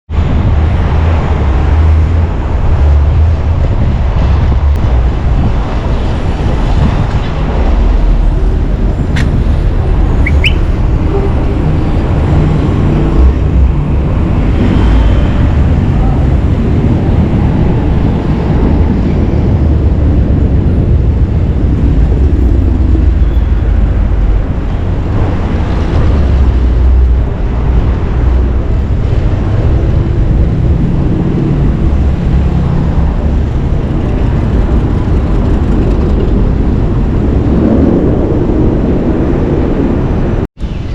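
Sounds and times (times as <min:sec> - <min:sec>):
city street traffic: 0:00.1 - 0:40.9
wind buffeting microphone: 0:00.1 - 0:40.9
high squeaks: 0:10.1 - 0:11.5.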